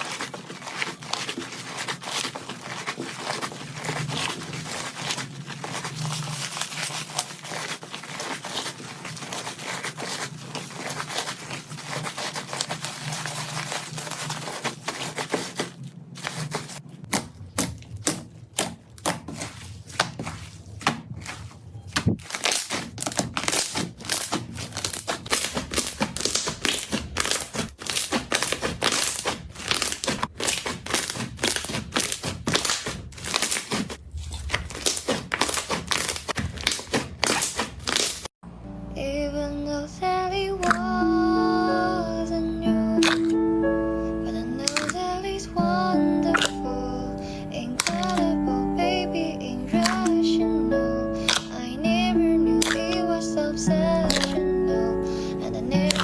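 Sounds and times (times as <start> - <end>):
slime rustling: 0.0 - 38.4, 40.6 - 41.0, 42.9 - 56.0
sticky slime clicks and pops: 40.6 - 40.9, 43.0 - 43.4, 44.6 - 45.0, 46.3 - 46.6, 47.8 - 48.3, 49.8 - 50.2, 51.2 - 51.6, 52.6 - 53.0, 54.0 - 54.4, 55.8 - 56.0.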